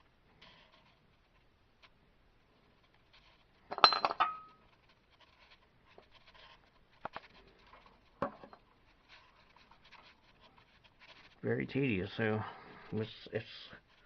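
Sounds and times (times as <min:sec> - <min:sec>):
metal clatter with ringing: 0:03.7 - 0:04.6
metal tools clinking: 0:03.7 - 0:04.6.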